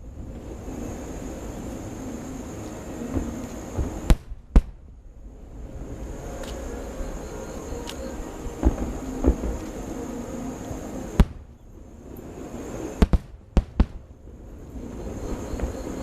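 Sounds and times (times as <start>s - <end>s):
steady background hiss: 0.0s - 16.0s
fireworks bursting: 0.3s - 5.0s, 5.8s - 16.0s
sharp cracks: 3.1s - 4.9s.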